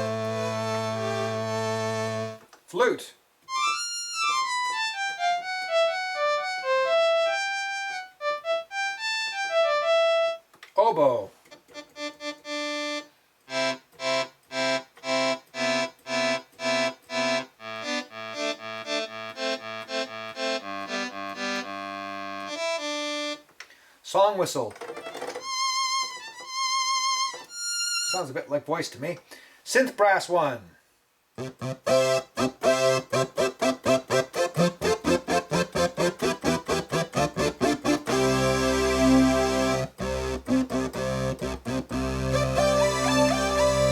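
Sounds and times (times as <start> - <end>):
reedy synthesizer notes: 31.4 - 43.9.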